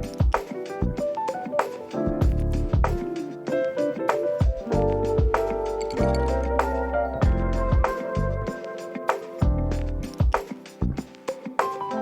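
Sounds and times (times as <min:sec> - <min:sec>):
low drum thumps: 0:02.2 - 0:03.0, 0:04.5 - 0:07.9, 0:09.4 - 0:11.0.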